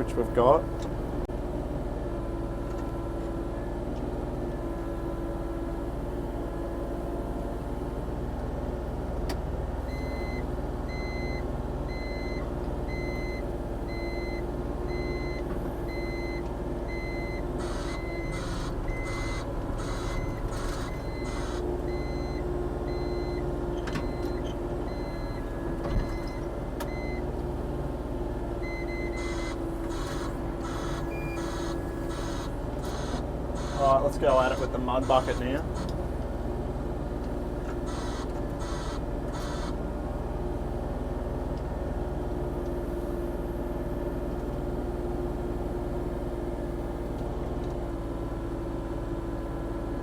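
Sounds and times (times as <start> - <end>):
electronic alarm beeping: 9.9 - 23.4, 24.0 - 27.2, 28.6 - 35.9, 37.8 - 39.8
excavator diesel engine digging: 11.9 - 42.0
short noisy pulses: 29.2 - 35.9, 37.8 - 39.8.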